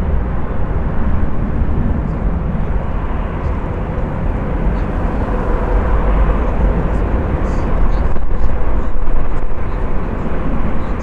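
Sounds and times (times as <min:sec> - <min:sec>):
faint jet engine whine: 0:00.0 - 0:11.0
jet engines rumbling at takeoff: 0:00.0 - 0:11.0.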